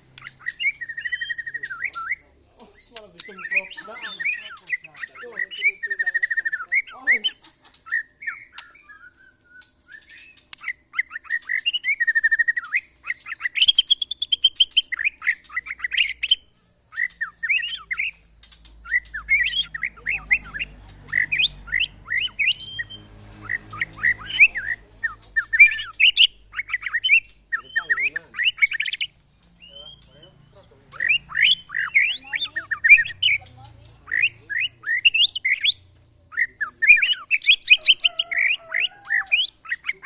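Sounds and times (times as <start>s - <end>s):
songbirds singing: 0.0s - 40.0s.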